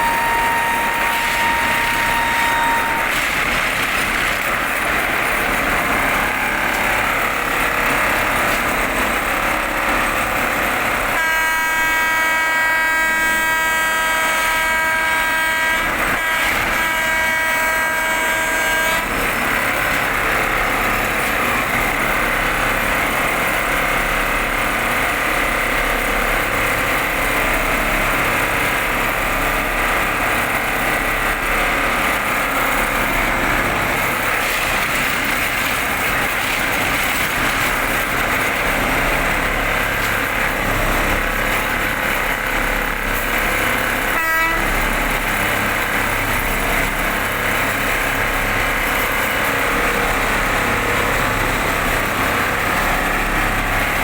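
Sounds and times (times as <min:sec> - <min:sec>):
high-pitched squeal: 0:00.0 - 0:04.8
industrial machine din: 0:00.0 - 0:54.0.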